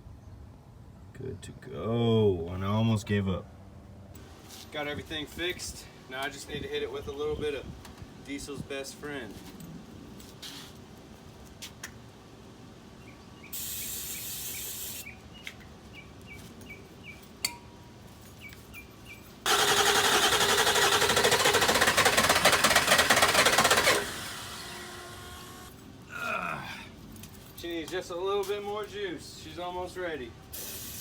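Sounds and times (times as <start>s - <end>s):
aerosol spray hiss: 13.6s - 15.1s, 30.6s - 31.0s
diesel engine cranking: 19.4s - 25.8s.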